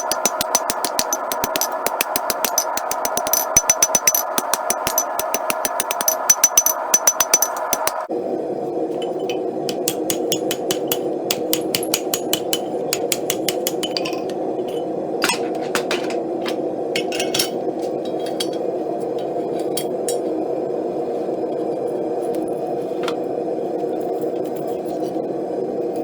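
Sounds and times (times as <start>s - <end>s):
hammer tapping on steel: 0.0s - 8.1s, 9.7s - 14.4s.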